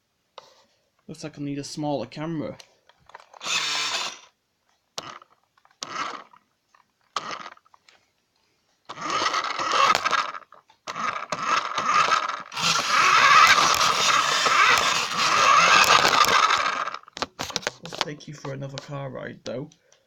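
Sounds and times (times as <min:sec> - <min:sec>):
toy car motor whirring: 0:03.1 - 0:04.4, 0:05.0 - 0:06.4, 0:07.1 - 0:07.7, 0:08.9 - 0:18.0.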